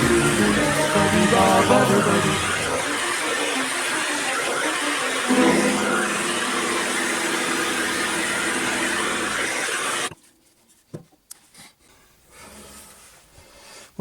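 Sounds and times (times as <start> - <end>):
machine tool cutting metal: 0.0 - 10.1.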